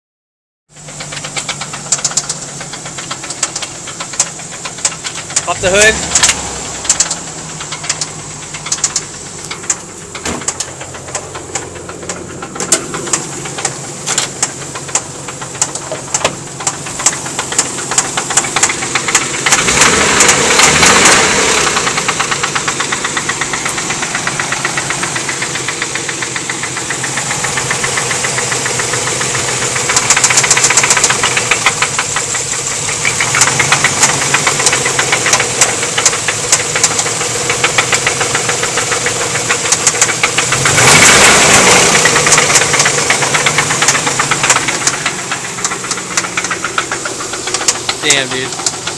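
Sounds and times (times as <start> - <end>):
car engine with rod knock: 0.7 - 48.9.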